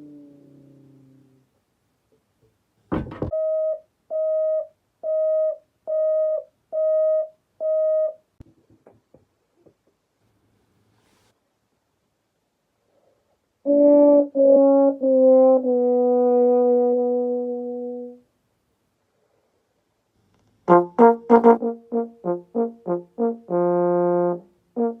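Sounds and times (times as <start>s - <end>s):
trombone descending notes: 13.7s - 18.2s, 20.7s - 25.0s
trombone short detached notes: 20.7s - 25.0s.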